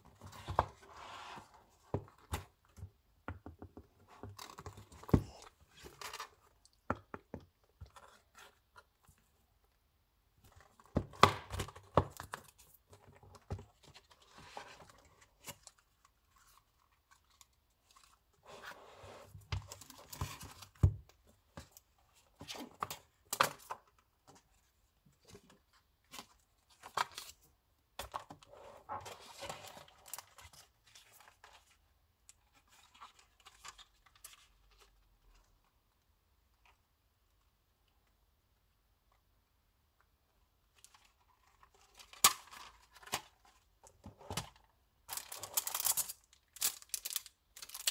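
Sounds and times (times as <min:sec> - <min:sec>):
packaging tearing and rustling: 0:45.1 - 0:47.9.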